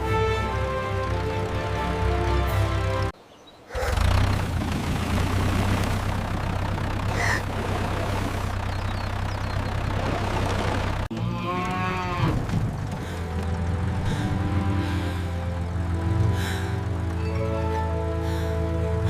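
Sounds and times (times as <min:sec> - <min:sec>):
cow mooing: 0:11.1 - 0:12.4
steady low rumble: 0:12.3 - 0:19.0.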